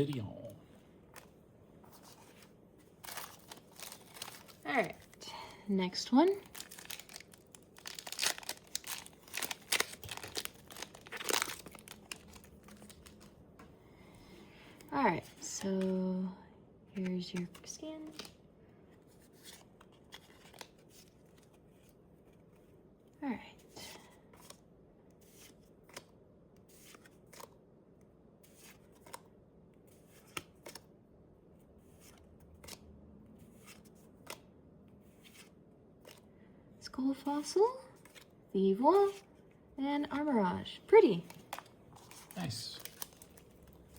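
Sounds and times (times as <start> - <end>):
foil wrapper crinkling and tearing: 3.0 - 5.2, 6.3 - 13.3, 41.5 - 43.9.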